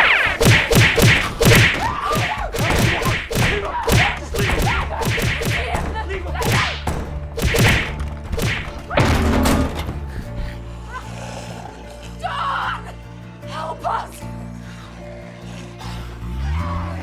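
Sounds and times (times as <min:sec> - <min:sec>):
sliding pitch glides: 0:00.0 - 0:01.9
whip-like swishes: 0:00.0 - 0:09.0
cartoon thumps: 0:00.0 - 0:10.0.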